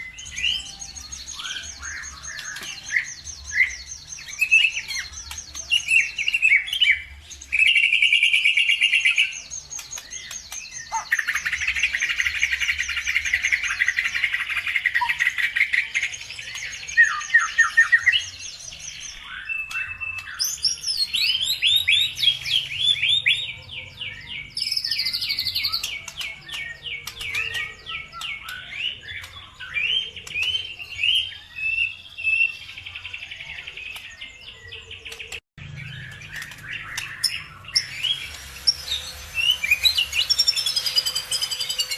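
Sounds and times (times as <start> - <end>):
songbird trilling and chirping: 0.0 - 41.9.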